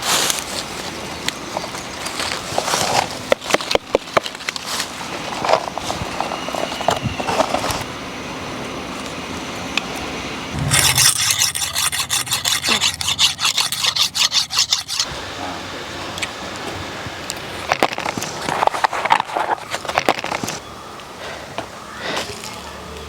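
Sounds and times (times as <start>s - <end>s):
fast rasping strokes: 10.6s - 15.1s
scrapes and knocks: 10.6s - 15.1s.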